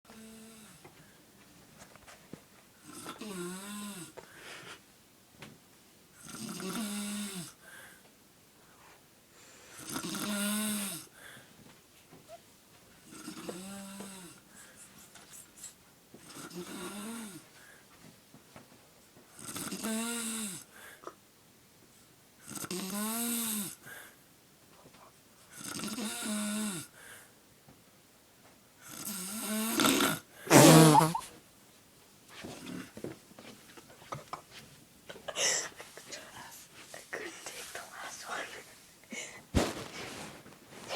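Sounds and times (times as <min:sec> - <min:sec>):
person snoring: 0:28.9 - 0:31.3.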